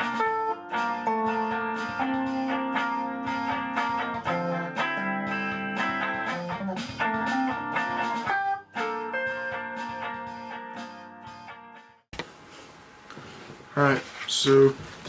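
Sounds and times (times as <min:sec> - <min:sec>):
plucked guitar music: 0:00.0 - 0:12.0.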